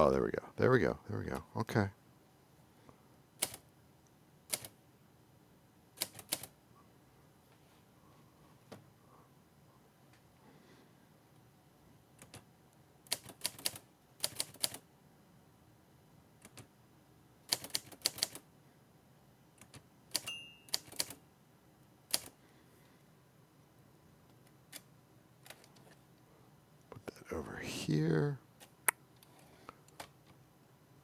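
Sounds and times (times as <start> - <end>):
manual typewriter clacking: 3.4 - 3.6, 6.0 - 6.5, 13.1 - 14.8, 17.5 - 18.4, 19.6 - 21.2, 22.1 - 22.3
brief high ring: 20.3 - 20.8.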